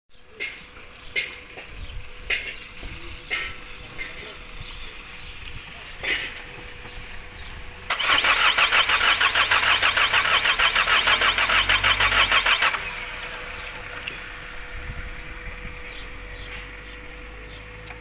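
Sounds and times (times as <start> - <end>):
starter motor cranking engine: 7.9 - 14.6.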